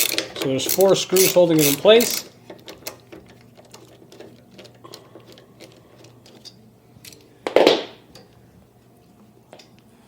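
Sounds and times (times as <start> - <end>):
ratchet wrench clicking: 0.0 - 3.0.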